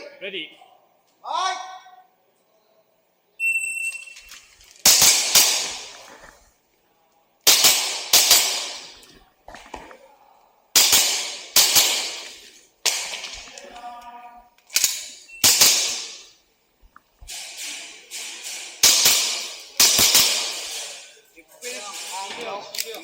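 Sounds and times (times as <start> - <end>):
airsoft pistol firing: 4.9 - 6.0, 7.5 - 9.0, 10.8 - 13.5, 14.8 - 16.3, 17.4 - 21.0.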